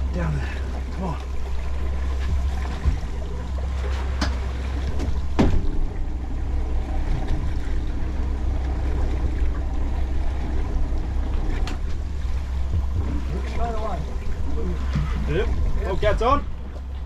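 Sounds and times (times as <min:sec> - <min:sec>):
wind and water rumble: 0:00.0 - 0:17.0
sharp knock on boat: 0:02.1 - 0:03.4, 0:04.0 - 0:06.0, 0:12.6 - 0:13.8.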